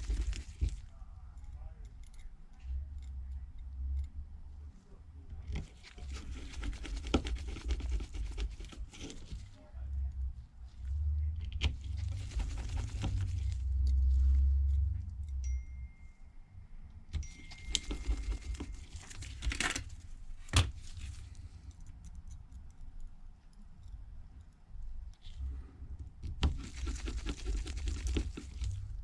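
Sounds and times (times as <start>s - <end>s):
low rumble: 9.4s - 22.0s.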